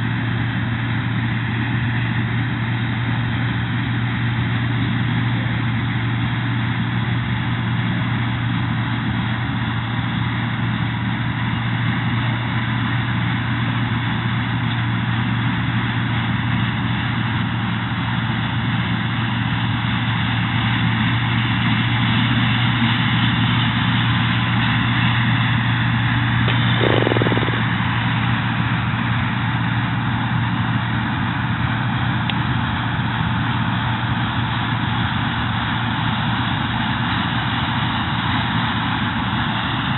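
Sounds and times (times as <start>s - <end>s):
combine harvester running: 0.0s - 39.9s
short extra sound: 26.5s - 27.8s.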